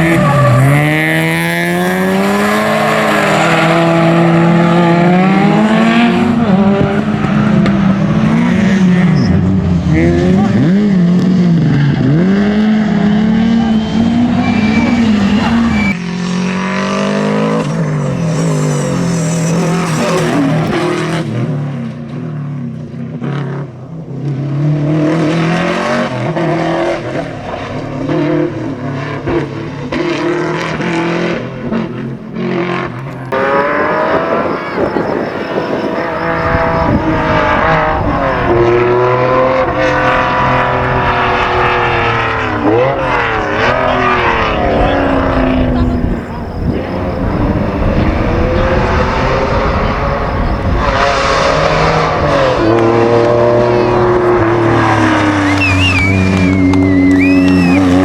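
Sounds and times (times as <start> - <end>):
rally car engines revving: 0.0 - 58.0
tyres on gravel: 26.7 - 58.0.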